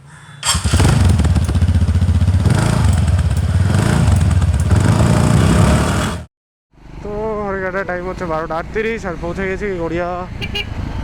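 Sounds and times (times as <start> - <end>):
single-cylinder engine running: 0.4 - 6.3.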